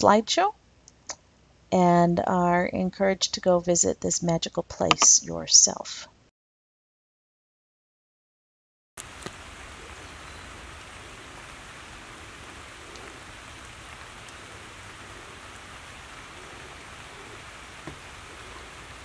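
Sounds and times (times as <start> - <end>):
faint ticks: 9.0 - 9.4
outdoor hiss: 9.0 - 19.0.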